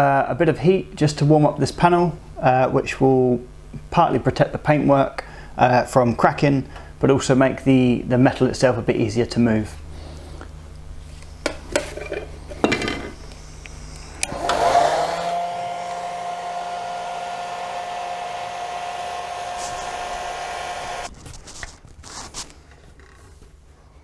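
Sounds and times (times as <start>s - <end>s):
heat gun fan whine: 7.7s - 21.1s.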